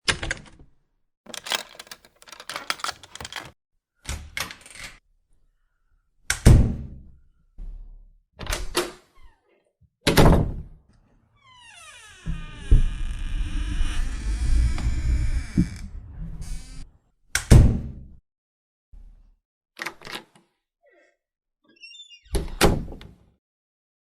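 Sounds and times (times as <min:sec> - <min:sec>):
door handle and latch clicks: 0:01.3 - 0:03.6.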